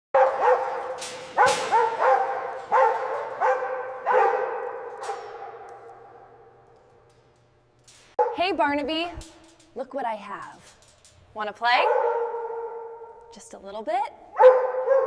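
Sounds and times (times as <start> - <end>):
dog barking with echo: 0.2 - 6.2, 11.8 - 13.2, 14.4 - 15.0.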